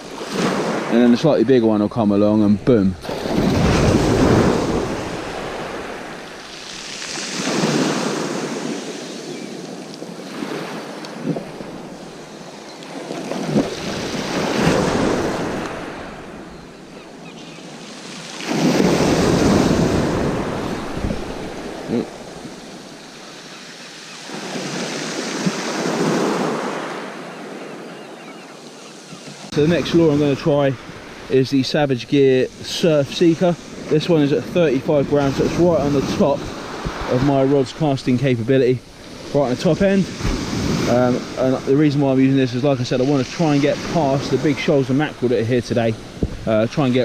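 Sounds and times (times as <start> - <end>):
sea waves breaking on beach: 0.0 - 1.4, 3.0 - 47.0
wind buffeting microphone: 10.0 - 16.8, 18.4 - 23.0, 35.0 - 37.8, 43.4 - 47.0.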